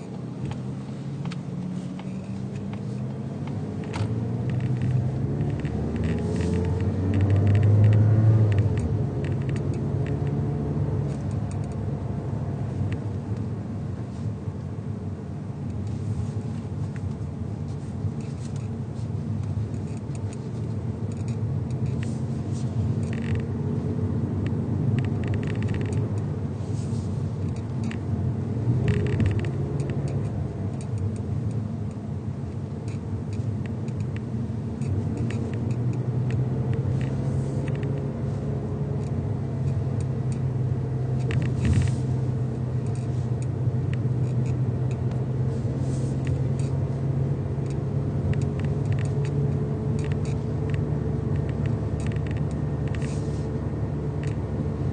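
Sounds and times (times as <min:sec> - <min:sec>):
car engine and road rumble: 0:00.0 - 0:54.9
light ticks: 0:47.6 - 0:53.2.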